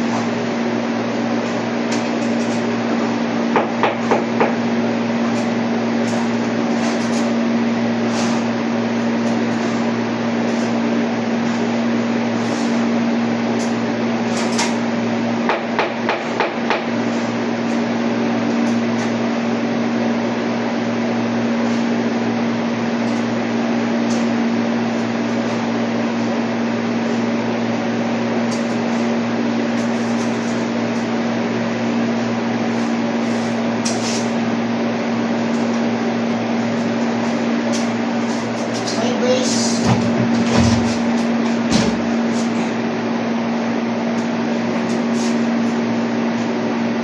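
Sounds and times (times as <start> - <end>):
mechanical hum: 0.0 - 47.0
motor running steadily: 0.0 - 47.0
hammer strikes: 15.5 - 16.9.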